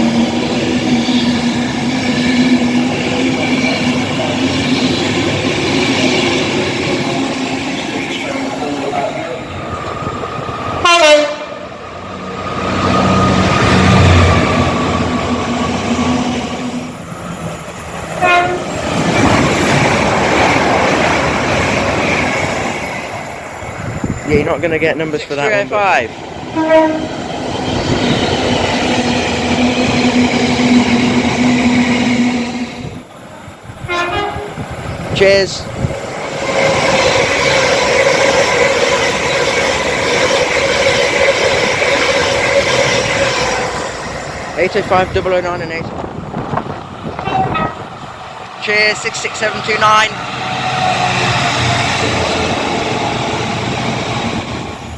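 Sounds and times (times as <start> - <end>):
train rumbling past: 0.0 - 54.9
train horn: 10.8 - 11.7, 18.2 - 18.8, 26.6 - 27.2, 33.8 - 34.6, 47.2 - 47.9
rail clatter: 12.1 - 54.9.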